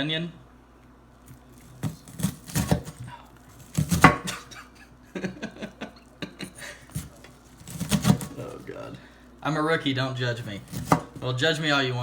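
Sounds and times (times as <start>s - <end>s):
knife chopping onion: 1.3s - 4.6s, 6.4s - 9.0s, 10.2s - 11.4s.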